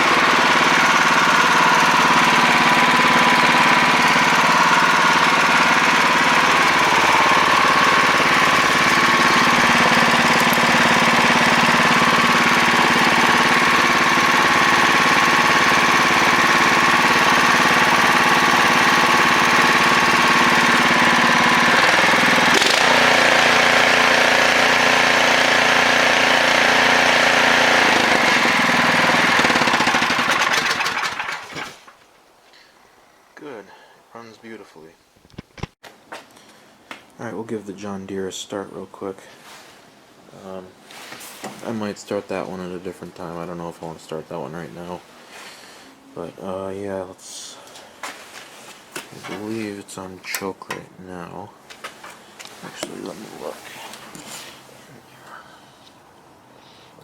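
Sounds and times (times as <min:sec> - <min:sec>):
snowblower engine running: 0:00.0 - 0:32.0.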